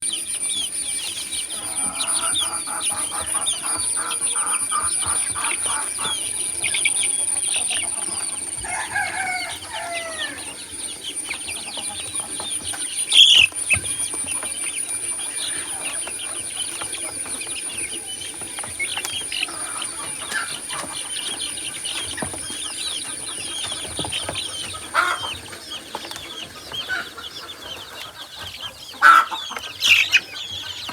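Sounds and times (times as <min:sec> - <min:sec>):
steady high-pitched tone: 0:00.0 - 0:24.1
baby chicks cheeping: 0:00.0 - 0:30.9.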